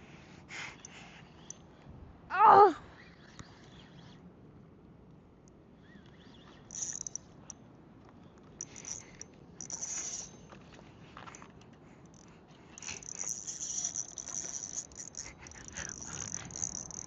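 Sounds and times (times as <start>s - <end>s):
fishing reel drag clicking: 0.6s - 1.7s, 3.0s - 4.2s, 5.8s - 7.6s, 8.6s - 10.6s, 12.1s - 17.0s.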